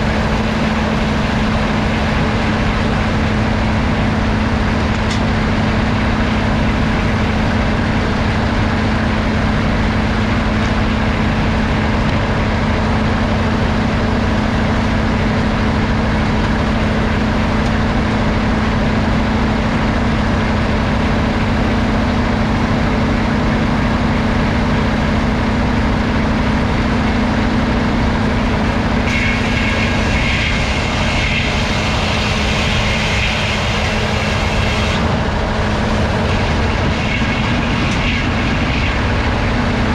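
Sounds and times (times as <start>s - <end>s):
sawmill running: 0.0s - 39.9s
high rasping noise: 21.1s - 39.9s.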